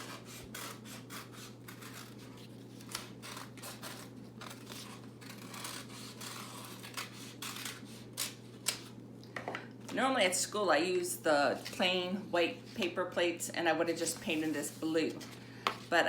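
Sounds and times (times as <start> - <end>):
scissors snipping paper plate: 0.0 - 8.9.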